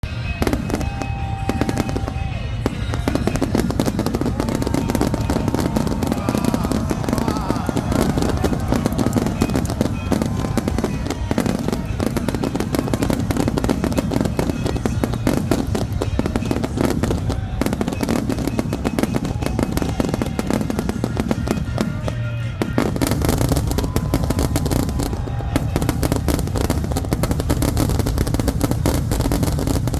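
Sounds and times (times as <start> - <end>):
fireworks crackling and popping: 0.0 - 29.9.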